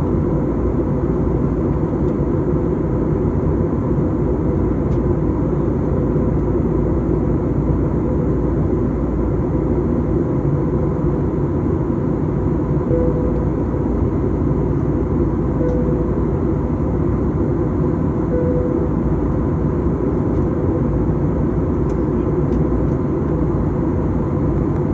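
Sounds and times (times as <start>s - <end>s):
aircraft cabin engine rumble: 0.0s - 24.9s
faint even hum: 12.9s - 16.8s, 18.3s - 19.7s.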